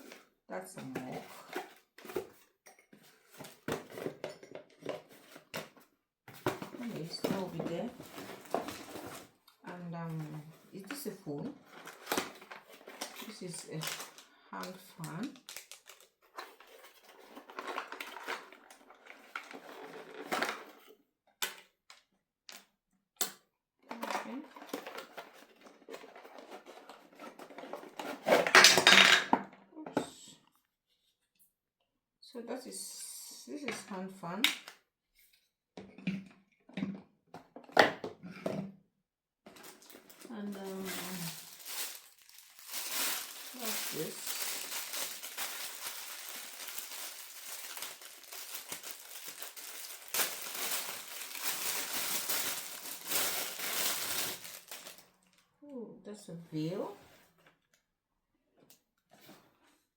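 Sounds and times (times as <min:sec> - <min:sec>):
packaging crinkling and rustling: 0:04.8 - 0:09.4, 0:11.6 - 0:20.9, 0:24.0 - 0:28.6, 0:39.5 - 0:55.4
gift clicks and clattering: 0:39.5 - 0:55.2.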